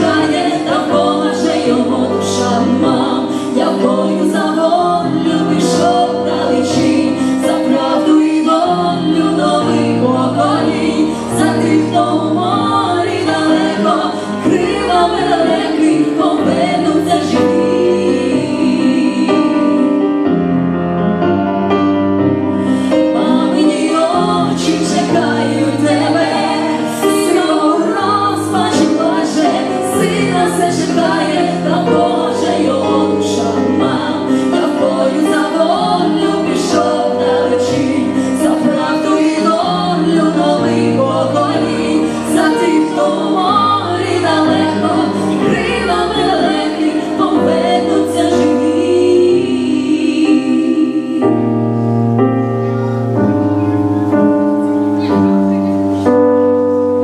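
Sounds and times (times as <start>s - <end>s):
female vocal duet singing: 0.0s - 20.1s, 22.8s - 51.7s.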